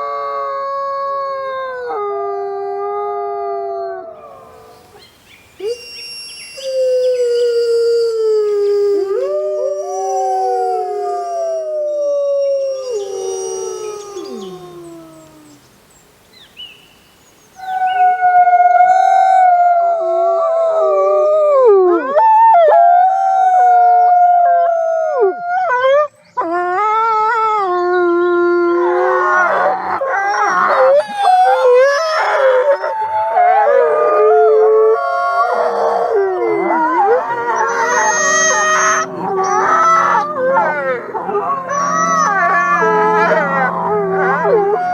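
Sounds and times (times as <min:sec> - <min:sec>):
chorus of wolves howling: 0:05.6 - 0:15.6, 0:17.6 - 0:44.9
wolf howling: 0:05.6 - 0:15.6, 0:17.6 - 0:44.9.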